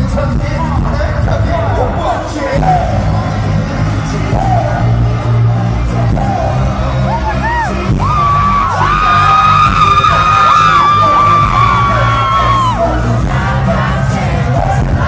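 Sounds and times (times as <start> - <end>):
loud live pop music: 0.0 - 15.0
whoops and yells: 7.1 - 13.0.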